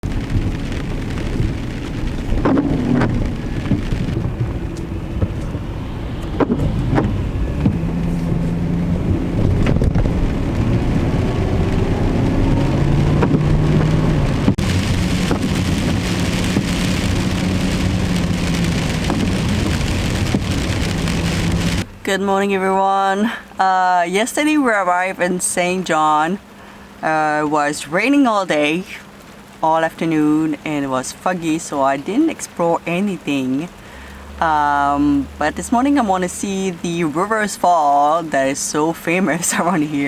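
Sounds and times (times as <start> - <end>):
rushing water hiss: 0.5 - 9.2, 12.7 - 21.8.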